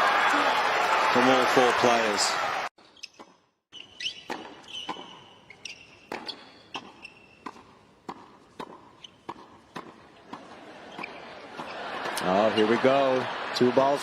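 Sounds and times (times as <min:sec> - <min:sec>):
shoe squeaks: 0:02.8 - 0:07.9, 0:08.7 - 0:09.7, 0:10.8 - 0:12.8
tennis balls bouncing on court: 0:02.8 - 0:13.0
tennis balls struck by rackets: 0:03.0 - 0:12.3.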